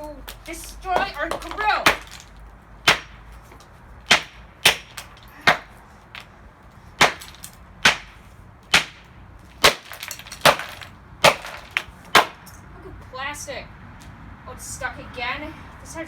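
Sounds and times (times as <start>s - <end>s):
blows cracking plastic clock: 4.1s - 6.3s, 7.0s - 12.5s.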